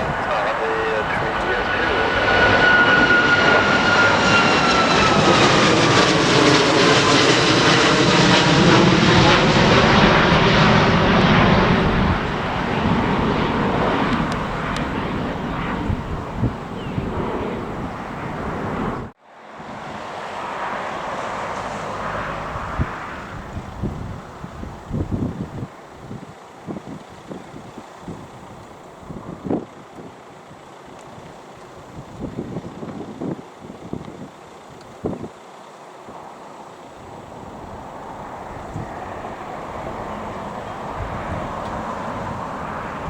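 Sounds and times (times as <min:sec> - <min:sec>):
wind buffeting microphone: 0:00.0 - 0:03.2, 0:08.7 - 0:20.2, 0:21.0 - 0:30.2, 0:31.2 - 0:35.3, 0:37.0 - 0:43.0
airliner engines whining: 0:00.0 - 0:43.0.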